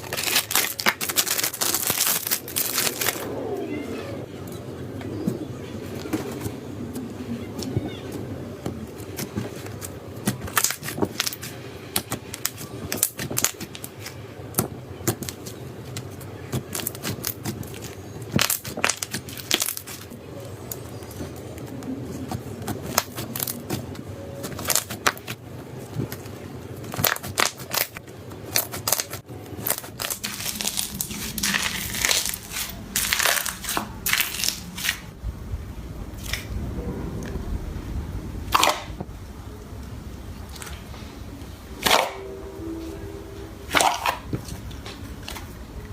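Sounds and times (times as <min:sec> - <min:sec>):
slime crackling and popping: 0:00.0 - 0:03.3, 0:09.1 - 0:20.1, 0:22.2 - 0:25.4, 0:26.8 - 0:35.1.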